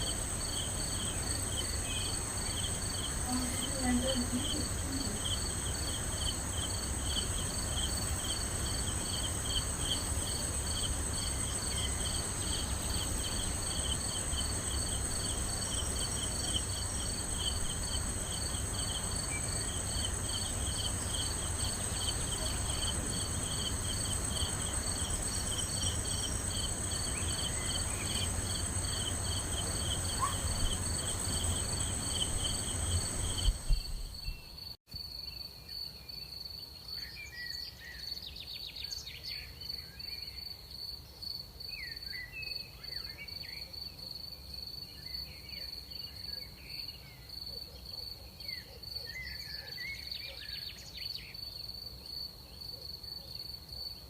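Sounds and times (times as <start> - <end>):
fast pulsing insect trill: 0.0 - 34.4
night insects chirping: 0.0 - 38.2.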